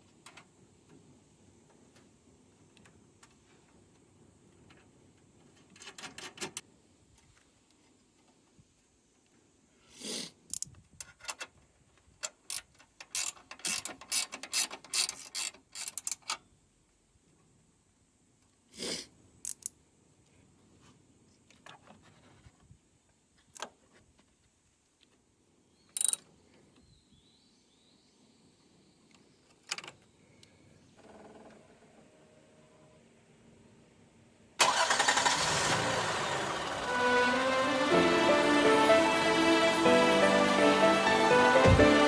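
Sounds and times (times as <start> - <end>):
ratchet wrench clicking: 12.5 - 16.3.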